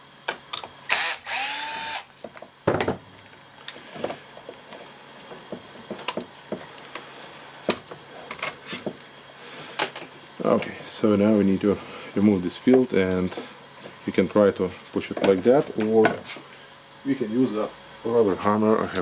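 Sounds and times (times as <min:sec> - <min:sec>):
cordless drill whining: 0:00.9 - 0:02.1.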